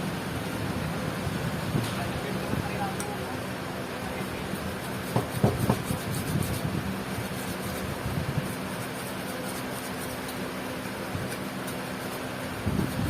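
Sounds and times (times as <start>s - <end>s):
machine hum: 0.0s - 5.2s.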